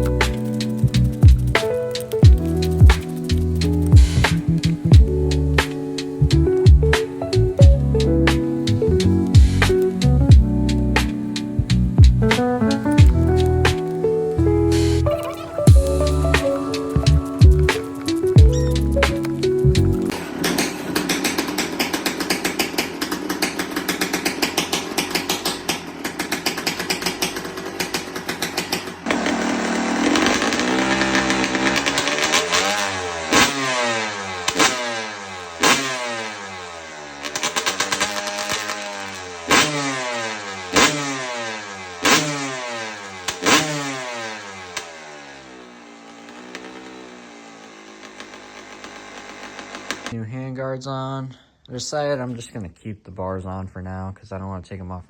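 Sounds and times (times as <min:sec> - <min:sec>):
two-stroke engine revving: 0:15.3 - 0:50.2.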